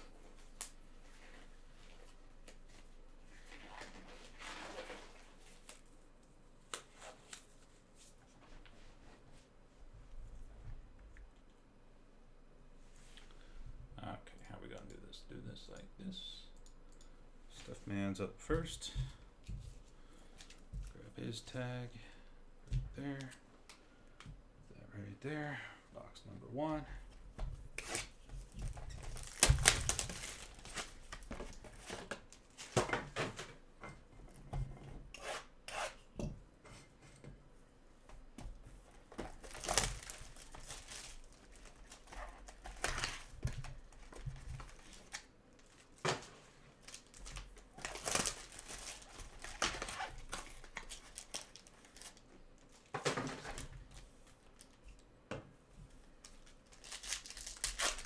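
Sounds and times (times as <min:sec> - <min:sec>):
packaging rustling and tearing: 0:27.8 - 0:33.5, 0:39.0 - 0:54.8, 0:56.2 - 0:58.0.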